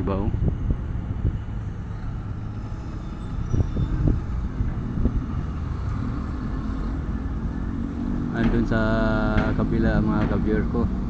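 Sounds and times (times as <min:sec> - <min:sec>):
steady engine hum: 0:00.0 - 0:11.0
vehicle engine rumbling: 0:00.0 - 0:11.0
light knocks: 0:08.3 - 0:10.5.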